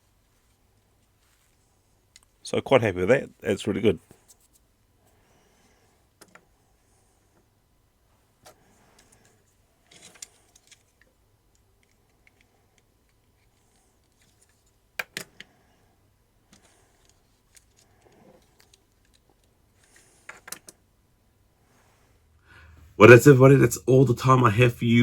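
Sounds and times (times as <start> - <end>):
soft rustling: 0.0 - 2.4, 4.0 - 5.8
plastic toy parts clicking: 9.9 - 15.5, 16.5 - 20.8.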